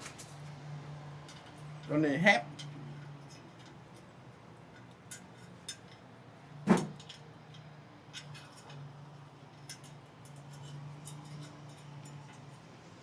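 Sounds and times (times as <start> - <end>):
metal parts clicking and clinking: 6.9 - 8.9, 9.5 - 12.6.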